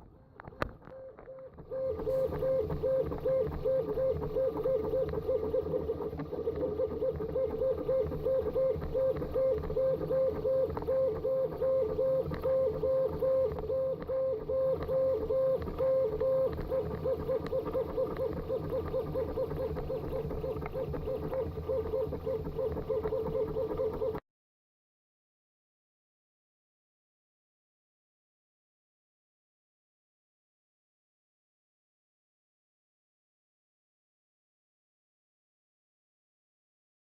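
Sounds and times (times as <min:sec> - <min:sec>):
printer stepper motors whining: 0:00.4 - 0:24.2.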